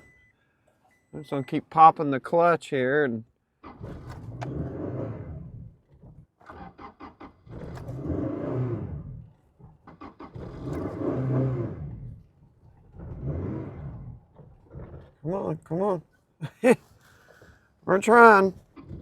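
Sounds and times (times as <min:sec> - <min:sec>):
engine starting and dying: 0:03.6 - 0:15.2.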